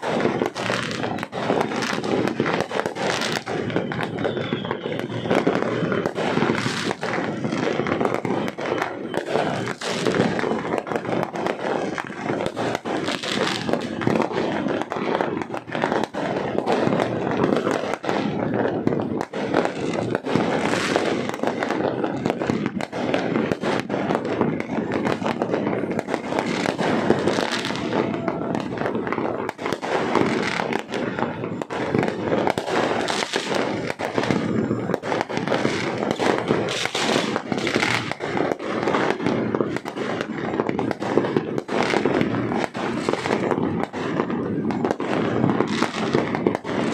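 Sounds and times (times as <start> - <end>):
firecrackers crackling and banging: 0.0 - 46.9
fireworks hissing: 0.0 - 46.9.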